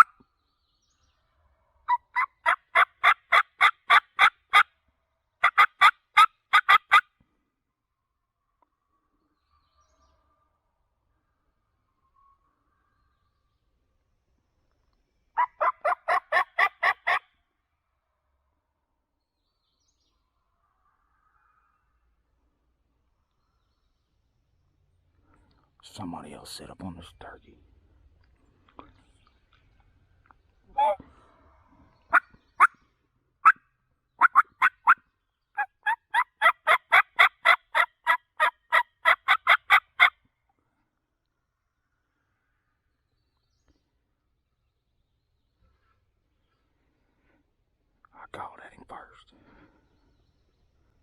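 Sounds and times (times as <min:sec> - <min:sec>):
turkey yelps: 0:00.0 - 0:00.2, 0:01.9 - 0:04.7, 0:05.4 - 0:07.1, 0:15.4 - 0:17.3, 0:30.7 - 0:31.1, 0:32.1 - 0:32.8, 0:34.2 - 0:35.0, 0:35.6 - 0:40.1.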